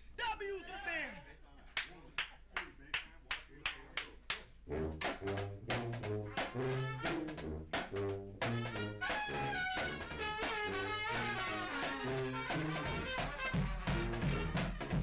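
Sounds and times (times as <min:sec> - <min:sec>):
low brass notes: 0:04.5 - 0:15.0
higher horns: 0:04.6 - 0:15.0
percussive hits: 0:04.7 - 0:15.0.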